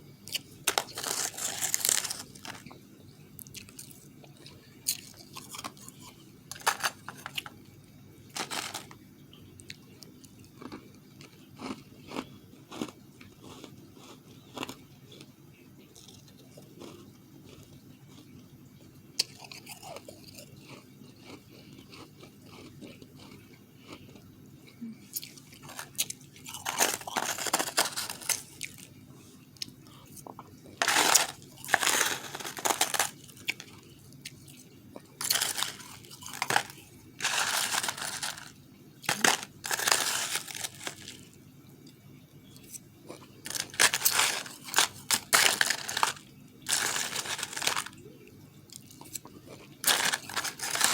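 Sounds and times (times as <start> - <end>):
ice being crunched by chewing: 0.3 - 2.8, 3.4 - 7.6, 8.3 - 9.0, 9.6 - 15.3, 19.2 - 24.3, 25.1 - 29.0, 29.6 - 41.3, 42.5 - 48.0, 48.7 - 50.9.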